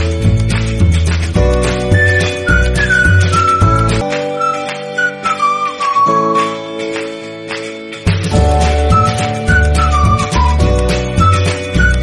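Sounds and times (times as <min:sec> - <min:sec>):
music with whistle-like melody: 0:00.0 - 0:12.0.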